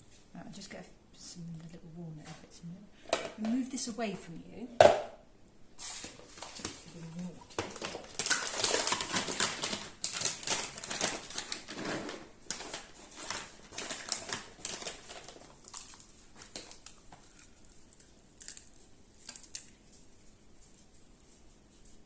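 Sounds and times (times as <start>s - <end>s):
rustling: 5.8s - 22.0s.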